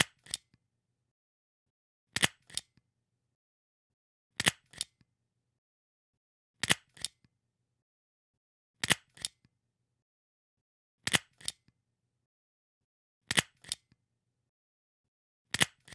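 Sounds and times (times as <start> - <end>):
stapler clicking: 15.6 - 15.9.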